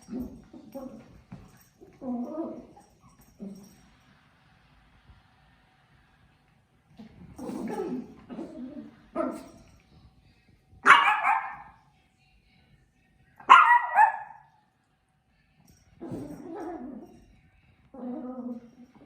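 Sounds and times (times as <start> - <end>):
puppy barking: 10.8 - 11.8, 13.4 - 14.4.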